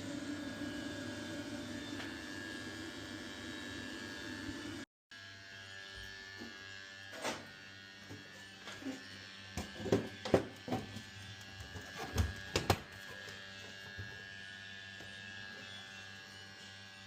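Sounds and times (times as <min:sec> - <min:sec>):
gas boiler humming: 0:00.0 - 0:04.9.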